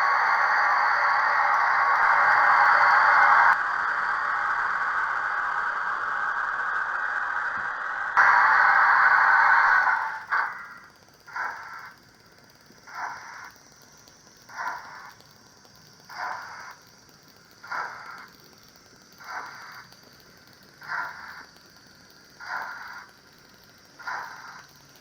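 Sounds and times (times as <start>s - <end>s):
loud steam hiss: 0.0s - 3.6s, 8.2s - 25.0s
steam exhaust chuffs: 8.2s - 25.0s.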